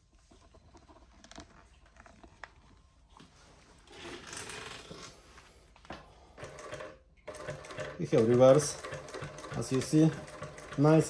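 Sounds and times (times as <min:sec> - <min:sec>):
faint sewing machine clicks: 0:06.4 - 0:11.0
sewing machine running: 0:06.4 - 0:11.0.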